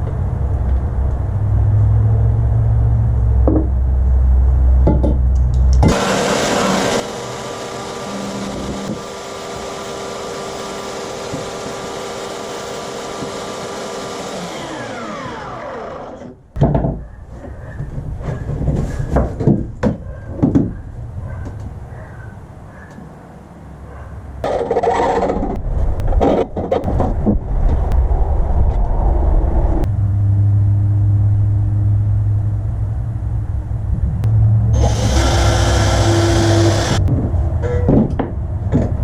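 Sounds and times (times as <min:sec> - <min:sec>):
power tool motor running: 0:05.9 - 0:16.4, 0:34.8 - 0:37.0
knocks and clatters: 0:16.6 - 0:20.8, 0:37.0 - 0:39.0.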